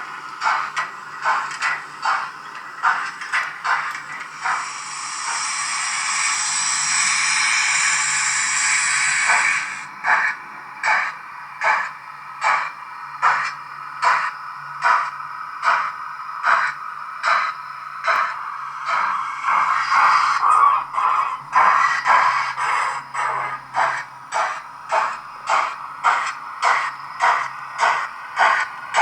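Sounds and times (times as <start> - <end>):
steam locomotive chuffs: 0.0 - 29.0
hiss of escaping steam: 4.4 - 9.8.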